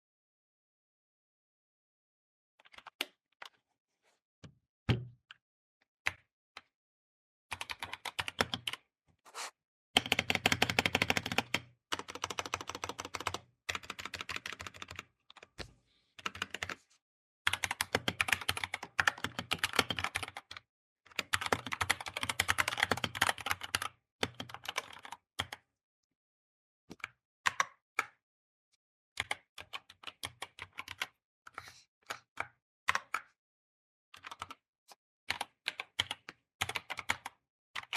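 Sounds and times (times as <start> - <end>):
keyboard typing: 10.0 - 15.5, 16.2 - 16.8, 17.5 - 20.6, 21.2 - 25.6.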